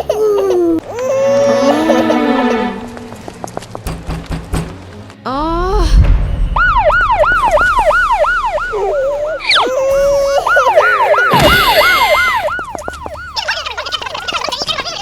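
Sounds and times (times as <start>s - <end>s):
yelping siren sound effect: 6.6s - 14.7s.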